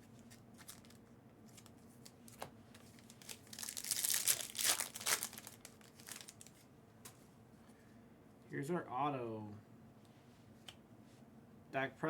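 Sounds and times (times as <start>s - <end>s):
plastic wrapper tearing and crinkling: 0.2s - 6.6s.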